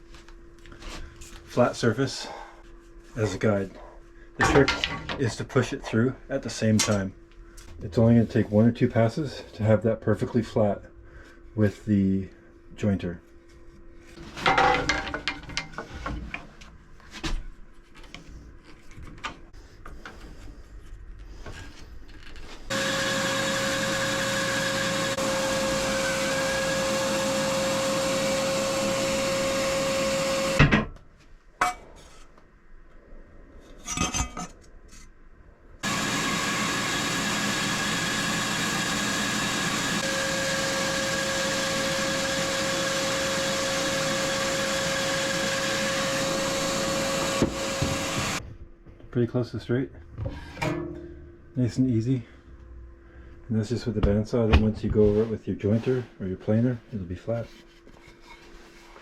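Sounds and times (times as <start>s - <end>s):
wood and tools clattering: 4.4s - 5.4s, 14.2s - 16.7s
workshop machine whining: 22.7s - 30.9s, 35.8s - 48.4s.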